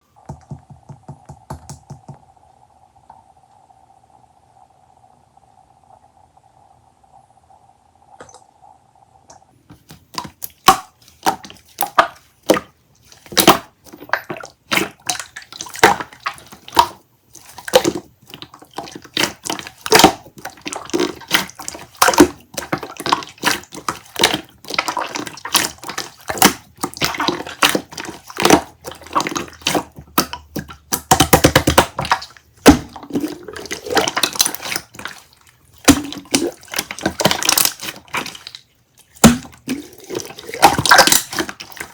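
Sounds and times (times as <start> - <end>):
liquid pouring and splashing: 10.1 - 41.9.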